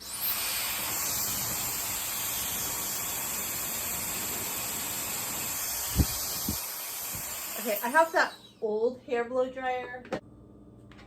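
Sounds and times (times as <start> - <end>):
hair dryer blowing: 0.0 - 8.7.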